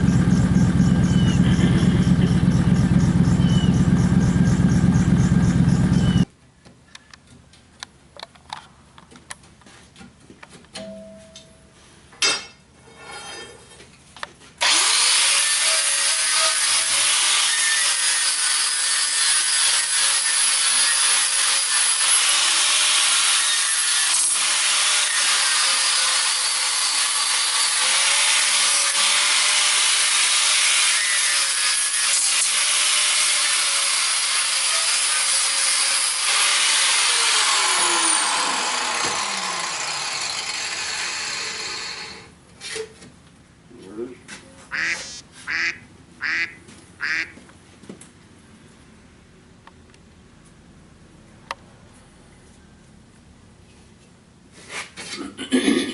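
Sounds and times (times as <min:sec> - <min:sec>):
grinder cutting through steel: 0:14.6 - 0:42.3.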